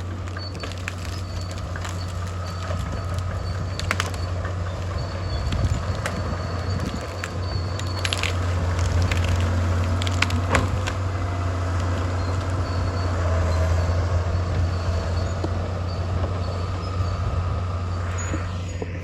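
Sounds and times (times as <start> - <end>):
sharp cracks: 0.0 - 12.6
diesel engine droning: 0.0 - 19.0.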